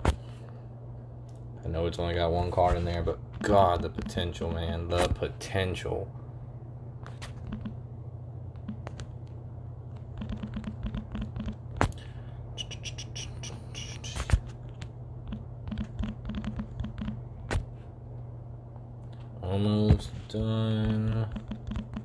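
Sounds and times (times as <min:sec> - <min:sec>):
steady low hum: 0:00.0 - 0:22.0
computer keyboard typing: 0:07.4 - 0:07.8, 0:10.1 - 0:11.6, 0:15.3 - 0:17.2, 0:21.1 - 0:22.0.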